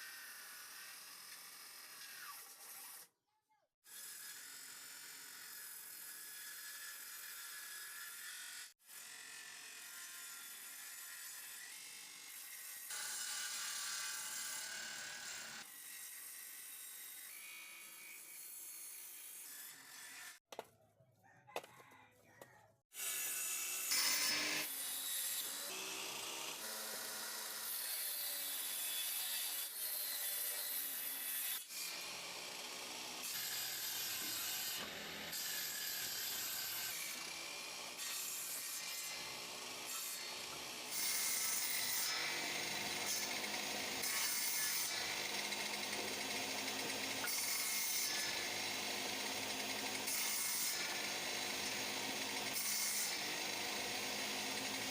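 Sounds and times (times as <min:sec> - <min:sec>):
tools working wood: 0:21.6 - 0:54.9
wood being sawn: 0:23.0 - 0:54.9.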